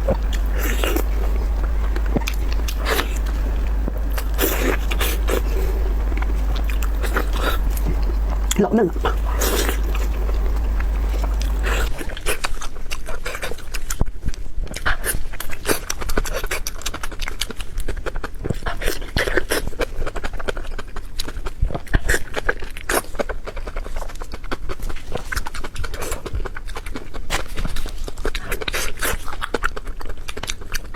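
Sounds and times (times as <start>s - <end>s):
wet smacking and chewing: 0.0s - 12.4s.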